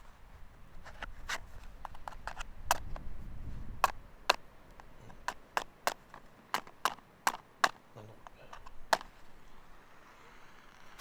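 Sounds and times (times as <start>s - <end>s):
sharp knocks: 3.8s - 9.3s.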